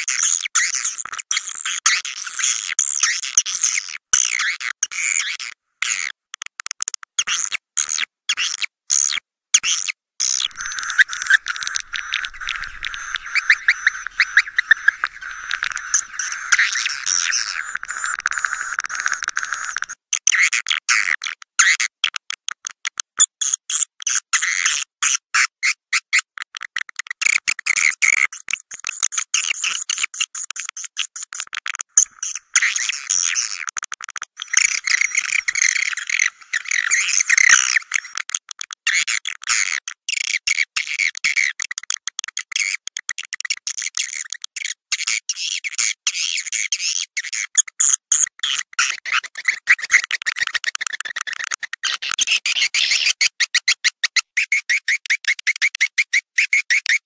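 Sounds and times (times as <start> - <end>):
recorded bird twittering: 10.2 - 20.0, 34.4 - 38.1, 52.2 - 53.8.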